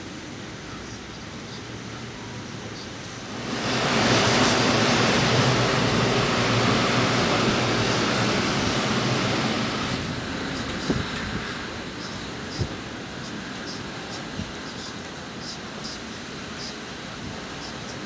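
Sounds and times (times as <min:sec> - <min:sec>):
loud rushing noise: 0:03.2 - 0:14.5.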